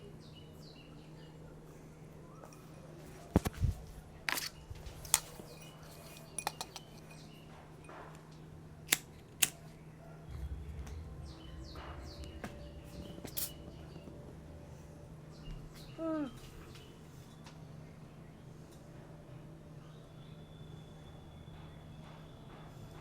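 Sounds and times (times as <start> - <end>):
steady low hum: 0.0 - 22.6
hard objects clicking and clinking: 5.1 - 7.3.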